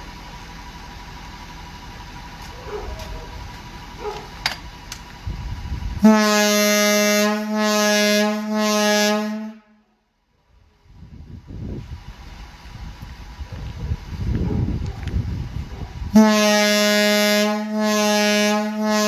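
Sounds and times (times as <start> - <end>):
low air horn blast: 5.9 - 10.0, 16.1 - 19.0.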